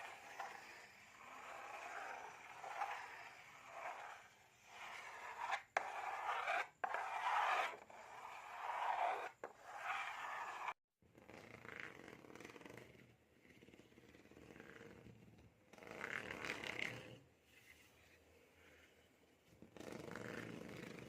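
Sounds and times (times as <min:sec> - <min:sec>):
scraping and rubbing strokes: 0:00.0 - 0:10.8.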